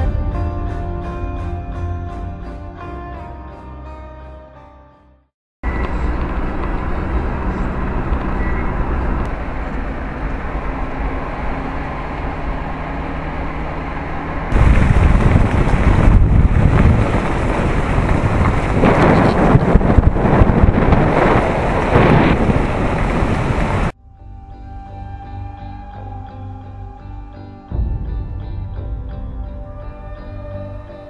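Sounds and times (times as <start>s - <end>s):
low motor hum: 5.6s - 24.0s
water noise: 5.6s - 24.0s
wind buffeting microphone: 5.7s - 24.0s.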